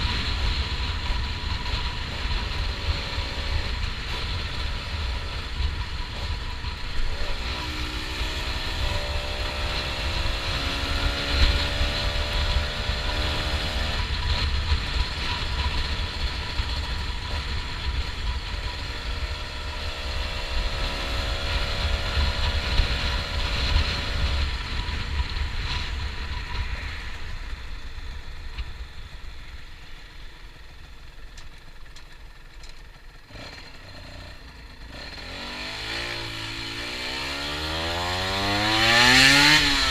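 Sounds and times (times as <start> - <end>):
wind rumble on microphone: 0.0 - 30.9
two-stroke motorcycle engine revving: 0.0 - 39.9.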